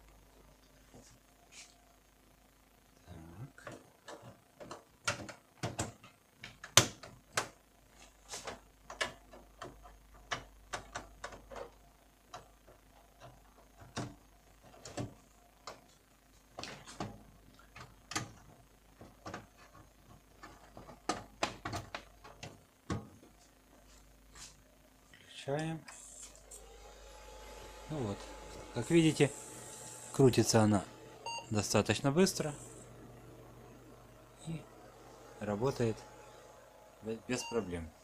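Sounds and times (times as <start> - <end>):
computer hardware clicks and knocks: 3.6 - 7.6, 8.5 - 12.5, 16.6 - 23.2.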